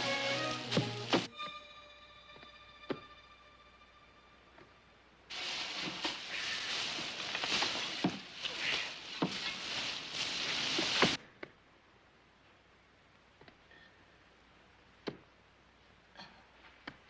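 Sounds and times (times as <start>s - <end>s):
dirt and rock being dug: 5.3s - 11.2s.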